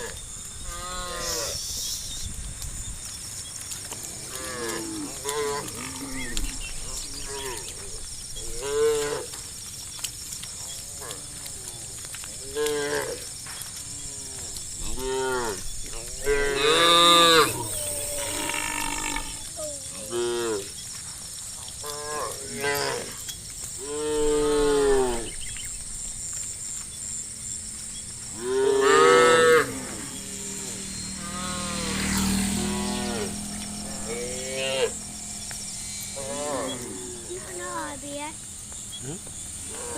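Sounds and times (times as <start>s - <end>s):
cows mooing: 3.8s - 9.4s, 10.7s - 20.7s, 21.8s - 23.2s, 23.8s - 25.4s, 28.3s - 38.0s, 38.9s - 39.9s.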